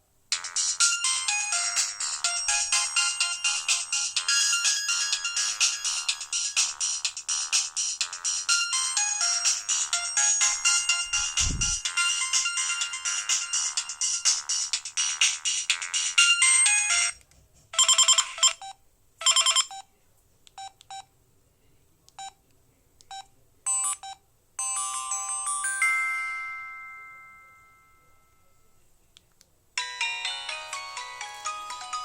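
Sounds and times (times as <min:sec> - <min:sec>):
phone melody: 0:00.3 - 0:17.2, 0:23.7 - 0:28.5, 0:29.8 - 0:32.0
bright chimes: 0:24.6 - 0:28.6.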